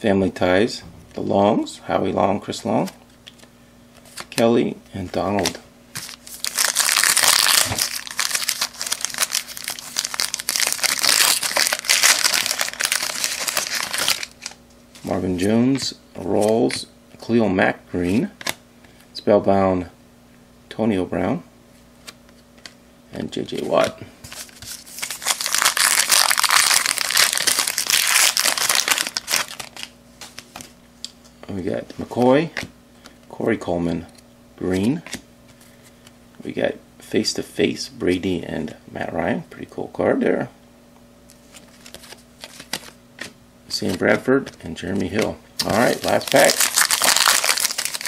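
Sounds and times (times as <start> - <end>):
plastic wrapper crinkling: 5.4 - 14.6, 23.8 - 30.7, 45.6 - 48.0.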